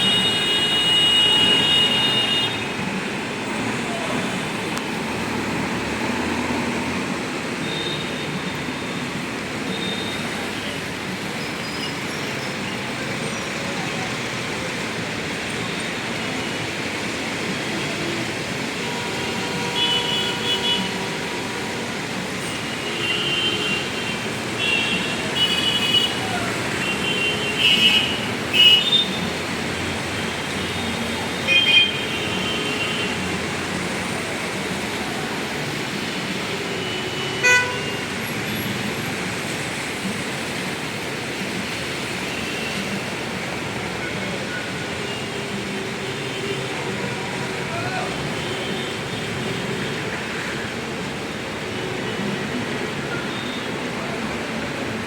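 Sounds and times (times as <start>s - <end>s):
road traffic hum: 0.0s - 55.0s
vehicle horn honks: 37.1s - 38.0s.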